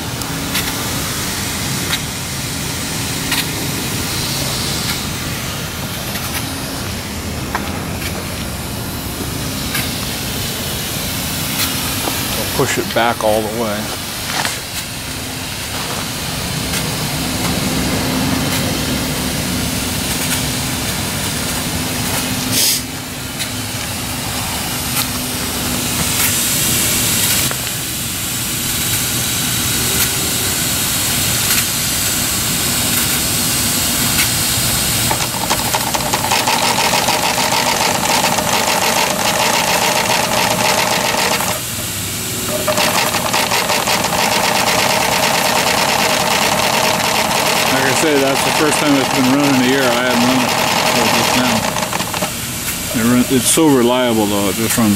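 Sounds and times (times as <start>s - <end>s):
steam engine exhaust beats: 28.2s - 54.9s.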